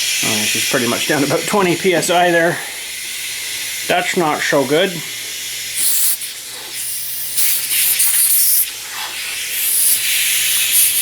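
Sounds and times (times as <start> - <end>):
compressed air hissing through valve: 0.0 - 11.0.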